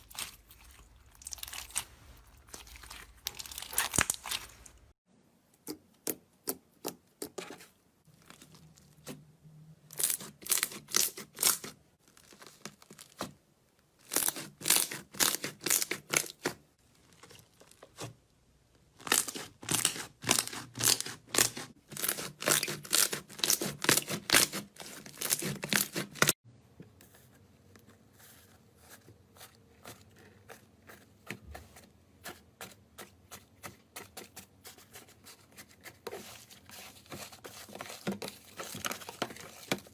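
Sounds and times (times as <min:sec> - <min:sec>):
slime crackling and popping: 0:01.2 - 0:04.9.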